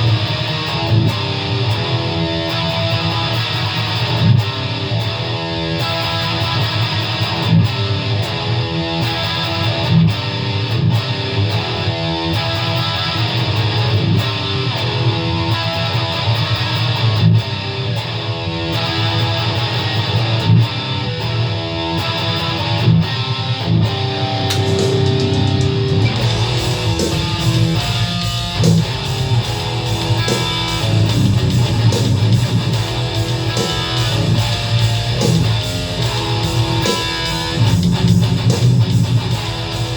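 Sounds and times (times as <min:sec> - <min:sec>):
distorted electric guitar riff: 0:00.0 - 0:39.9
drum machine metal beat: 0:24.4 - 0:39.9.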